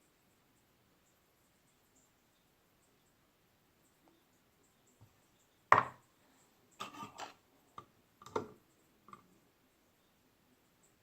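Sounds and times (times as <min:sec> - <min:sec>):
containers set down on table: 0:05.7 - 0:06.0.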